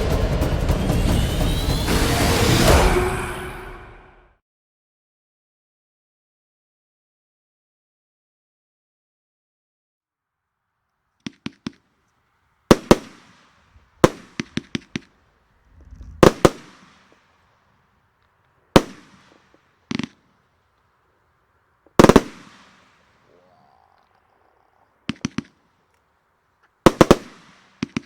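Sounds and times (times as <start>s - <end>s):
firework bangs with crackle: 12.7s - 15.1s, 15.9s - 17.2s, 18.7s - 20.3s, 21.9s - 23.2s, 25.1s - 25.6s, 26.8s - 28.0s.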